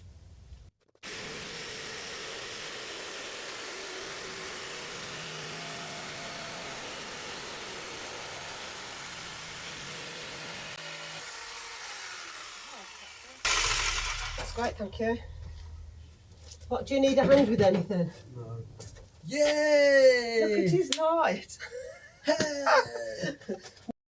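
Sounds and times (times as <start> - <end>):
electric jigsaw cutting plywood: 1.0 - 14.9.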